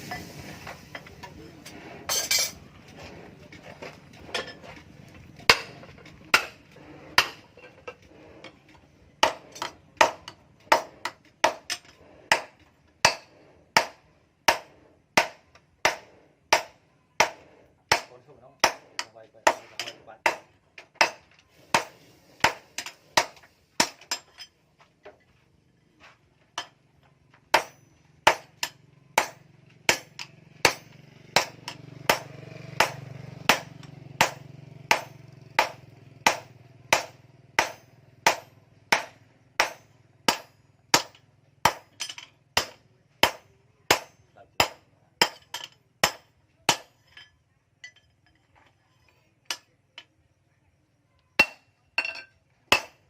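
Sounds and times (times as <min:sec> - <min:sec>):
hammer striking hot steel on anvil: 0:05.5 - 0:06.6, 0:07.2 - 0:07.7, 0:09.2 - 0:24.5, 0:27.5 - 0:48.1, 0:49.5 - 0:49.7, 0:51.4 - 0:53.0.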